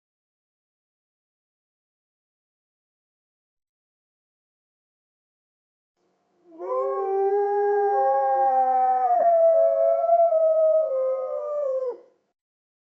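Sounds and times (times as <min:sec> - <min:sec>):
wolves howling: 0:06.5 - 0:12.0.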